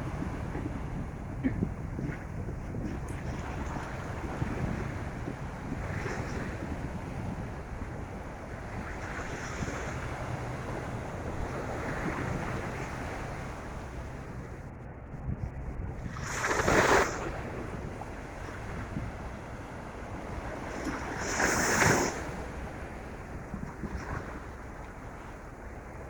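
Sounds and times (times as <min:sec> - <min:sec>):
wind buffeting microphone: 0:00.0 - 0:26.0
surf washing onto beach: 0:16.2 - 0:25.3.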